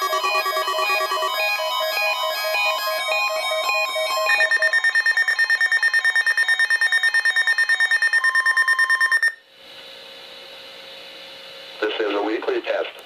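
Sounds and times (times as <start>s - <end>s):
rapid electronic beeping: 0.0s - 9.4s.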